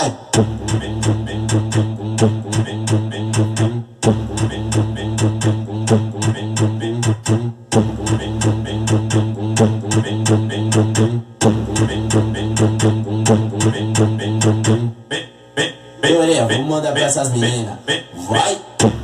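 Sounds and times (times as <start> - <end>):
loud music with heavy bass: 0.0 - 19.0.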